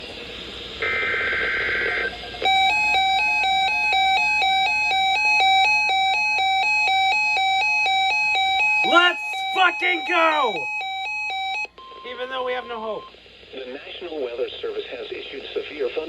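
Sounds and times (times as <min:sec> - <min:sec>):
two-tone alert alarm beeps: 0:08.6 - 0:12.2.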